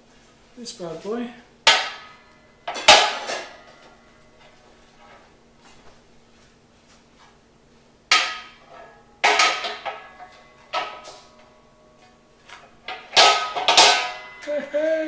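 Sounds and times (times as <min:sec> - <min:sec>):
metal barbecue parts clanking: 0:01.7 - 0:05.2, 0:08.1 - 0:14.7.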